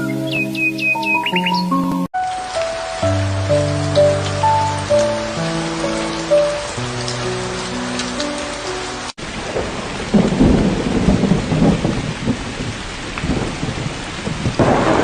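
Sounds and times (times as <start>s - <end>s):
soft music with held notes: 0.0s - 9.2s
steady rainfall: 2.2s - 15.0s
low thunder rumbling: 9.2s - 15.0s.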